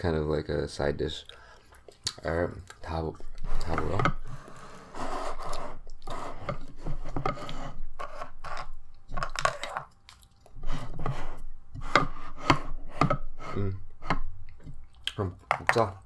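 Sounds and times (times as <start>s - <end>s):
utensils scraping dishes: 3.4s - 8.8s, 10.6s - 14.2s.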